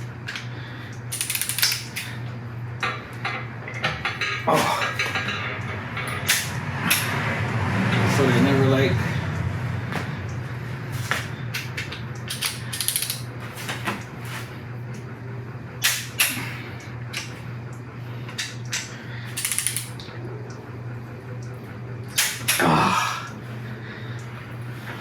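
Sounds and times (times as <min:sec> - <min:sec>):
low hum: 0:00.0 - 0:25.0
metal clicks: 0:01.1 - 0:02.1, 0:11.8 - 0:13.2, 0:18.4 - 0:20.0
ratchet wrench clicking: 0:01.1 - 0:02.1, 0:12.2 - 0:13.3, 0:19.4 - 0:20.0.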